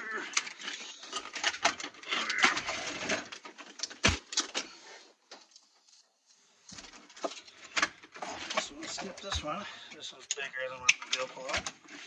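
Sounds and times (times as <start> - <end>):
metal parts clattering and clicking: 0.0 - 4.7.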